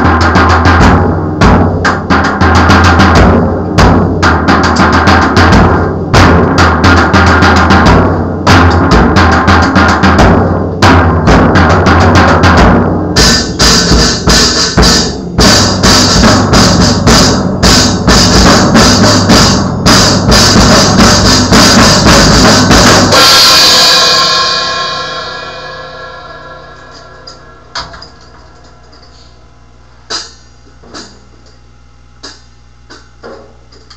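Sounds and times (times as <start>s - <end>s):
drum kit played fast: 0.0s - 29.4s, 30.0s - 31.4s
cymbal crash ringing: 13.2s - 29.5s.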